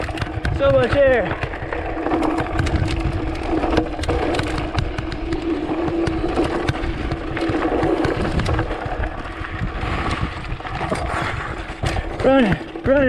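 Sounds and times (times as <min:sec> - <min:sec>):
tyres crunching on dirt: 0:00.0 - 0:13.0
wind rumbling on microphone: 0:00.0 - 0:13.0
bike frame clattering: 0:10.8 - 0:13.0.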